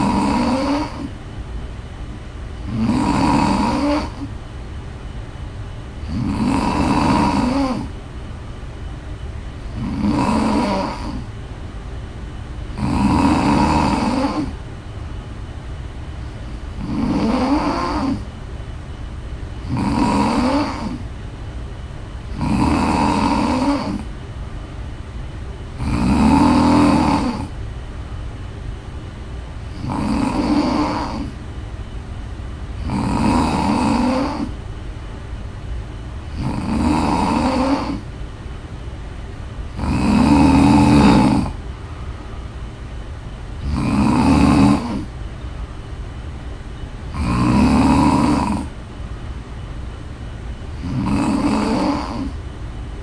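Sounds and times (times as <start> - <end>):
woman snoring: 0.0 - 1.2, 2.6 - 4.3, 6.0 - 8.0, 9.7 - 11.3, 12.7 - 14.6, 16.3 - 18.3, 19.6 - 21.0, 22.3 - 24.1, 25.8 - 27.6, 29.7 - 31.4, 32.8 - 34.6, 36.3 - 38.1, 39.7 - 41.6, 43.6 - 45.2, 47.1 - 48.8, 50.8 - 52.4
steady low hum: 0.0 - 53.0.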